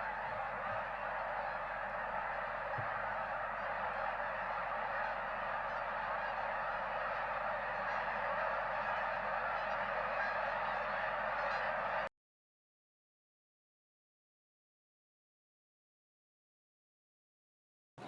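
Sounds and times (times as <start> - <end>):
flock of geese honking: 0.0 - 12.1.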